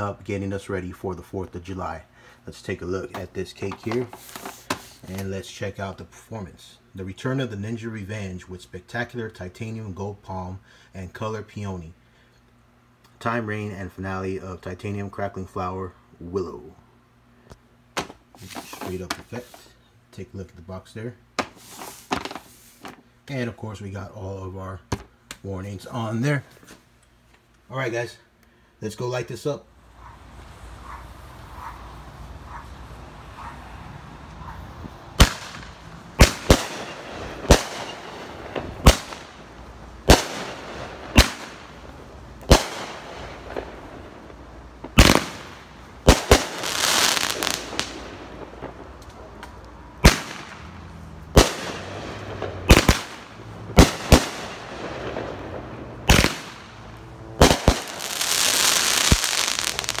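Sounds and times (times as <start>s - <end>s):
firework launches and bursts: 21.5s - 22.8s, 35.2s - 49.0s, 50.0s - 60.0s
dense firework crackling: 35.1s - 60.0s.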